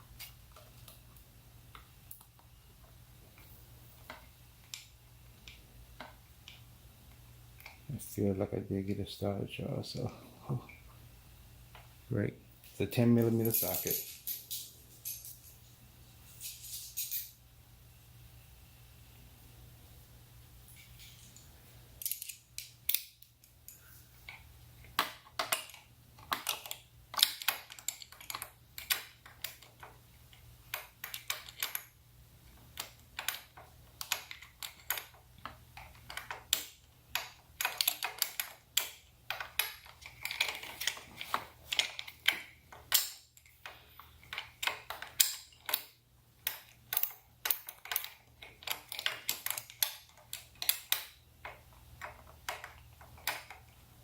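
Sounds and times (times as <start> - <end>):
small metallic clicks and taps: 0.2 - 7.8, 20.8 - 31.9, 32.5 - 53.8.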